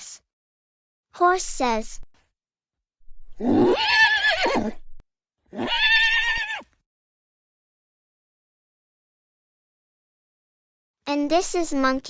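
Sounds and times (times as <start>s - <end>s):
horse neighing: 3.4s - 4.9s, 5.5s - 6.7s.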